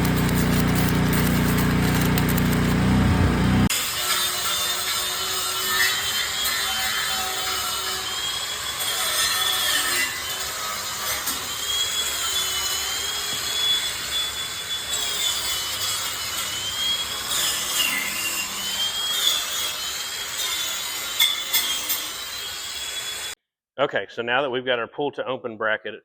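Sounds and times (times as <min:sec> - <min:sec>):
high wavering whine: 0:00.0 - 0:03.7
welding arc crackling hiss: 0:00.0 - 0:03.7.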